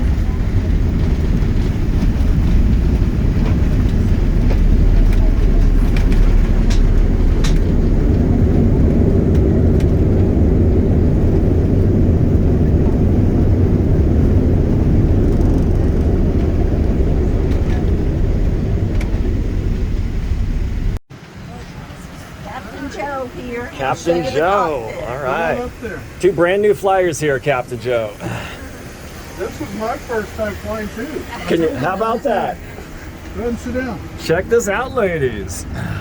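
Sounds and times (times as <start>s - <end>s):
airplane cabin low rumble: 0.0s - 36.0s
faint rattles: 25.5s - 34.4s.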